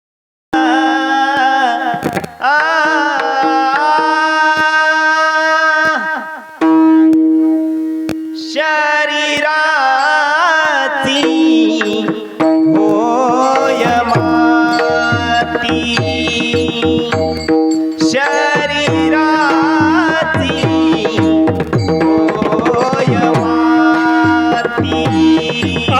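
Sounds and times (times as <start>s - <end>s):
person singing devotional melody: 0.6s - 6.8s, 8.2s - 25.9s
hand drum strokes: 11.4s - 25.9s.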